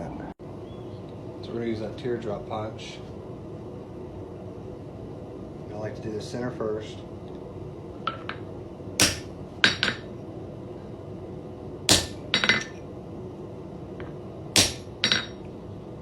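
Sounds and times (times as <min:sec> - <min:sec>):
hammer striking metal punch: 0:09.0 - 0:10.1, 0:11.9 - 0:12.8, 0:14.6 - 0:15.4.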